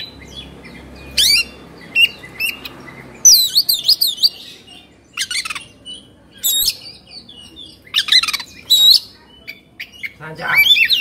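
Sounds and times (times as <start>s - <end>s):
bird singing whistled phrases: 3.2s - 11.0s.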